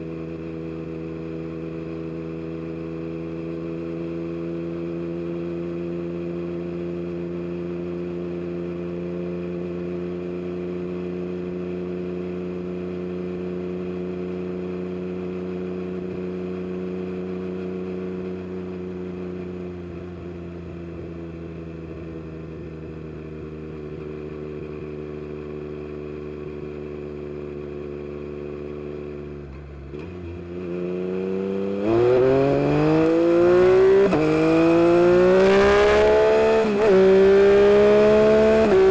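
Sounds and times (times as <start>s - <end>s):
motorcycle engine: 0.0s - 38.9s
motorcycle accelerating hard: 29.8s - 38.9s.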